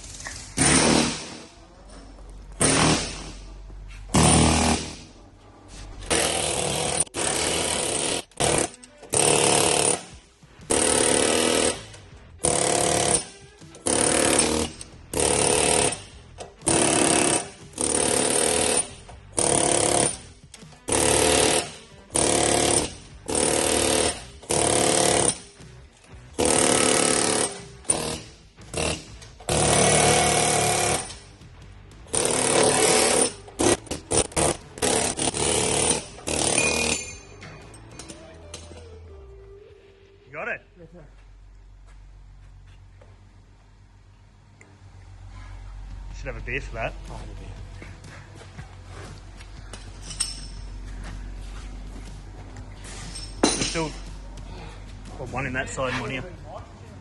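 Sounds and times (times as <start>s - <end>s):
pneumatic air hammer bursts: 0.0s - 1.4s, 2.6s - 3.4s.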